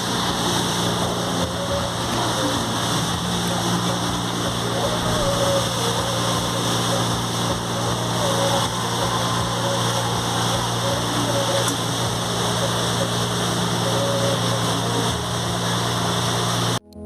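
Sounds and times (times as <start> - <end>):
boat engine droning: 0.0 - 17.0
faint voices: 0.0 - 17.0.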